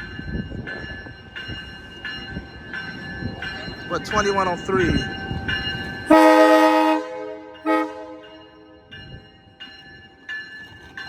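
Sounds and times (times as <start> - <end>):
train bell ringing: 0.0 - 11.0
train horn blasts: 6.1 - 8.7.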